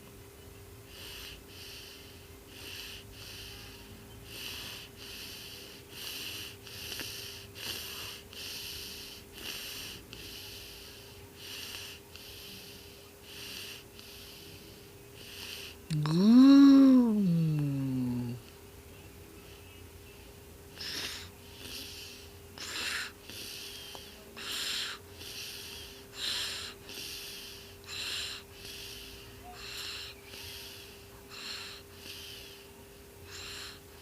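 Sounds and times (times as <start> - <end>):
cat breathing: 20.8 - 34.0.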